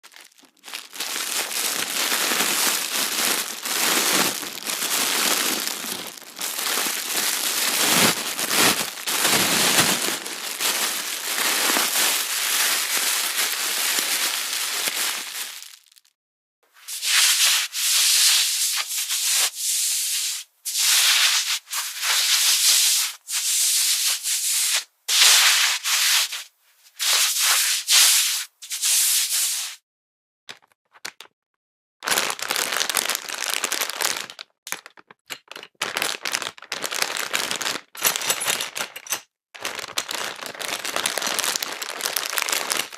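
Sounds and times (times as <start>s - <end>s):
kitchen foil crinkling: 0.0s - 16.0s, 16.8s - 29.8s, 39.6s - 42.9s
sweater rustling: 2.8s - 11.9s, 16.8s - 29.8s.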